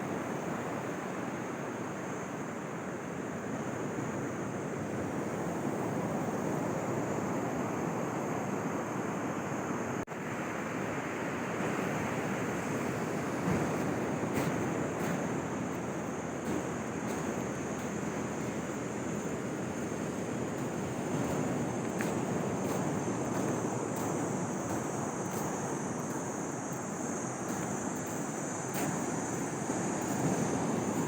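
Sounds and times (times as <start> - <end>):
sea surf washing onto beach: 10.3 - 31.0.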